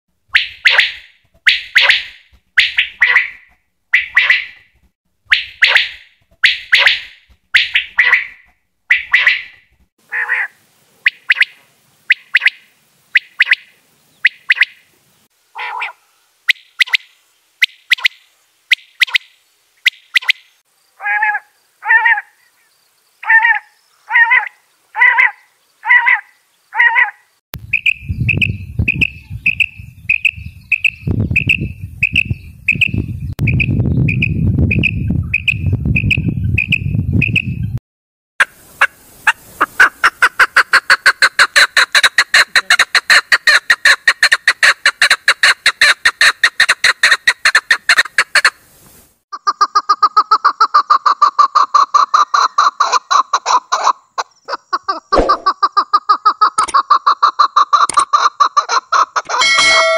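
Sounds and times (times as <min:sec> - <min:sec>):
short high notes: 0:59.4 - 0:59.9.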